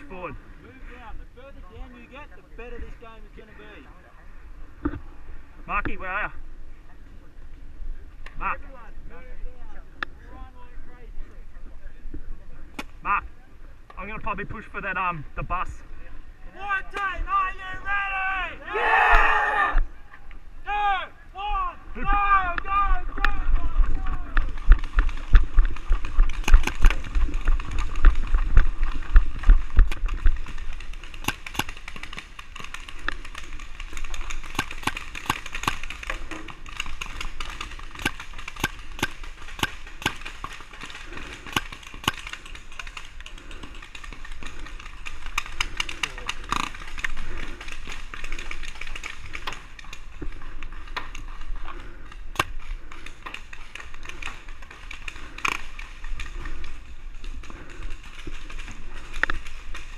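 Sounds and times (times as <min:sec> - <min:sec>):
paintball markers firing: 0:24.3 - 0:56.8.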